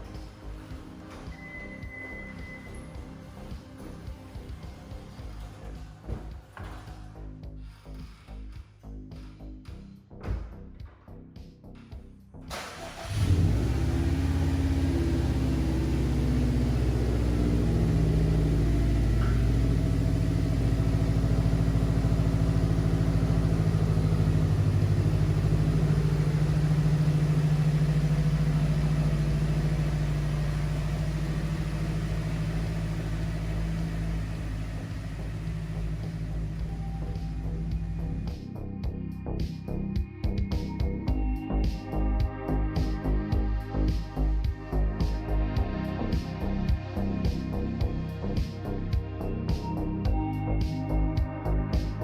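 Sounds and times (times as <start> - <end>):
car engine starting and idling: 0.0 - 7.8, 12.5 - 38.8.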